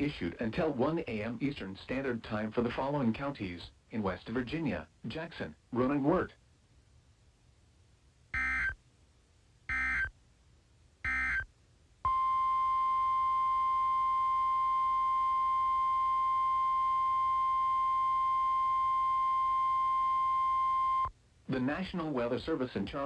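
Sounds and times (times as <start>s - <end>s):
digital data tone bursts: 8.4s - 8.8s, 9.7s - 10.1s, 11.0s - 11.5s
steady warning alarm tone: 8.4s - 8.8s, 9.7s - 10.1s, 11.0s - 11.5s, 12.1s - 21.1s.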